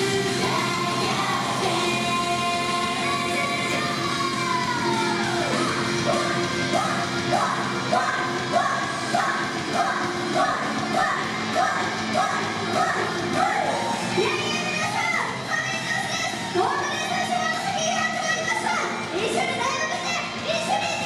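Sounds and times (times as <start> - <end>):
group singing: 0.0 - 9.5
pop-rock song with backing track: 0.0 - 21.0
shouted vocal lines: 0.0 - 21.0.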